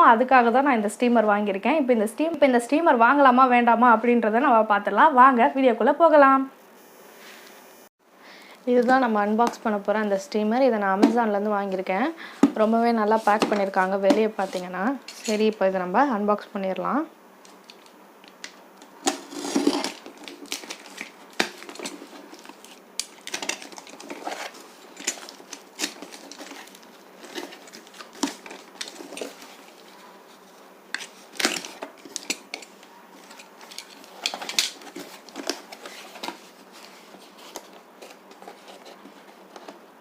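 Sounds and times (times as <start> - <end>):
cardboard and plastic crackling: 17.5 - 40.0.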